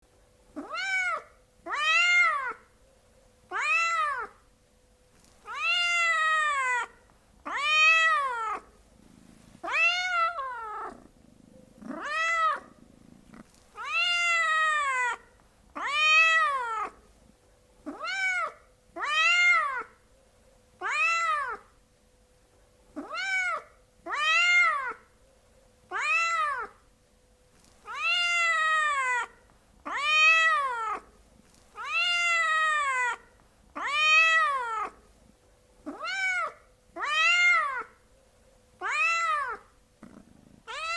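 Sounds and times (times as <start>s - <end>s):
cat meowing: 0.6s - 2.7s, 3.5s - 4.4s, 5.4s - 8.7s, 9.6s - 11.1s, 11.8s - 12.8s, 13.8s - 17.0s, 17.9s - 20.0s, 20.8s - 21.7s, 23.0s - 25.1s, 25.9s - 26.8s, 27.8s - 31.1s, 31.8s - 35.0s, 35.9s - 38.0s, 38.8s - 39.7s, 40.7s - 40.9s.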